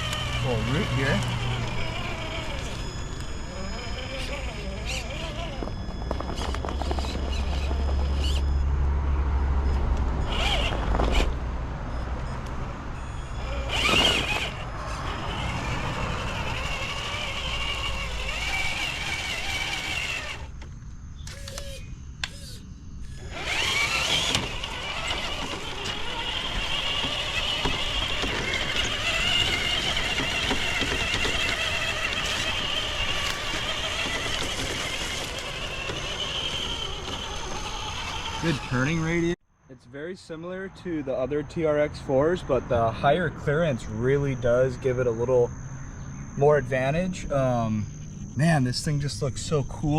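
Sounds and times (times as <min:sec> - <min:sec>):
electric motor whining: 0:00.0 - 0:08.6, 0:10.2 - 0:11.4, 0:13.3 - 0:39.4
knocks over rough ground: 0:24.2 - 0:37.3.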